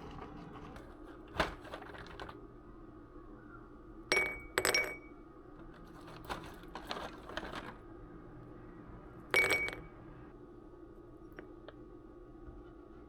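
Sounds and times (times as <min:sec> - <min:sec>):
dishware clinking: 0:09.4 - 0:09.9.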